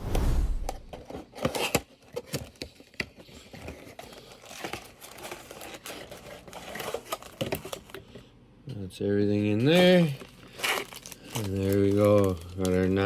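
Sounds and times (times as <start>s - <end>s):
plastic wrap crinkling: 3.5s - 8.0s, 9.6s - 13.0s.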